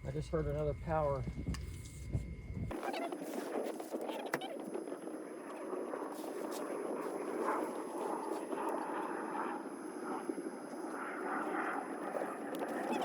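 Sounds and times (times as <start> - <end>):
crunching and scraping in snow: 2.7 - 9.5.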